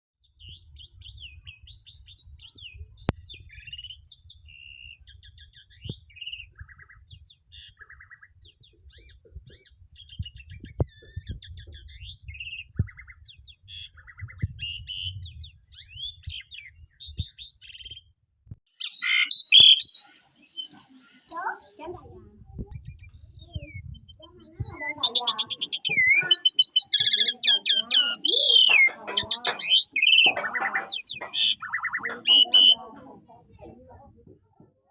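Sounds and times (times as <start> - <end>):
starling singing: 0.4 - 18.1, 18.7 - 34.6
bird harsh call: 18.8 - 21.6, 24.3 - 32.9.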